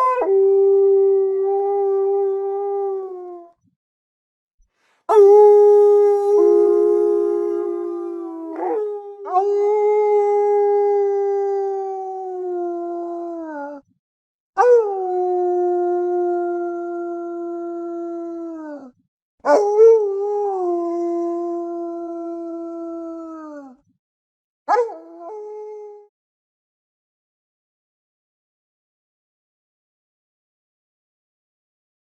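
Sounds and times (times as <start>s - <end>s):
wolf howling: 5.1s - 13.8s.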